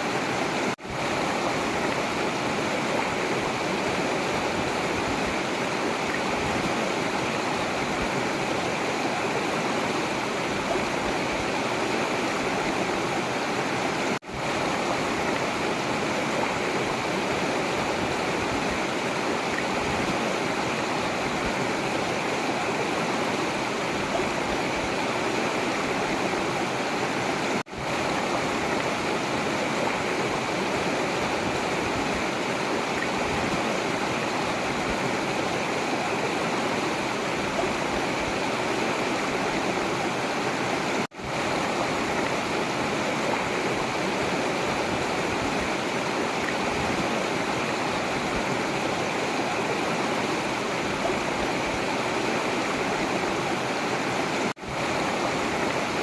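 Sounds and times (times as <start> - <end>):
river water rushing and gurgling: 0.0 - 56.0.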